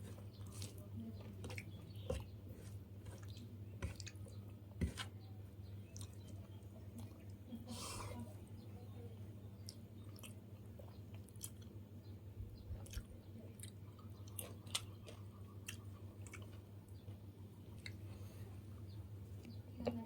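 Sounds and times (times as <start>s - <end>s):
person chewing food: 0.0s - 5.2s, 5.9s - 7.4s, 9.6s - 11.8s, 12.8s - 18.4s.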